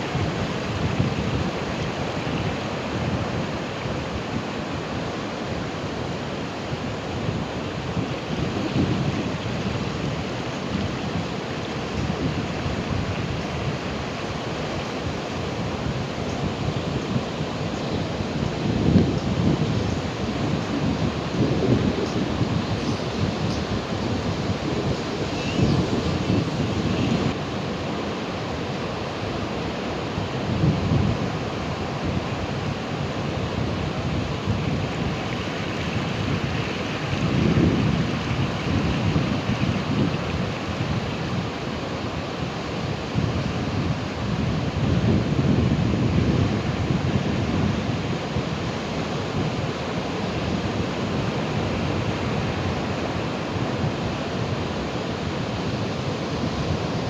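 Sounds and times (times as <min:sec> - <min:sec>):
ocean waves breaking: 0:00.0 - 0:57.0.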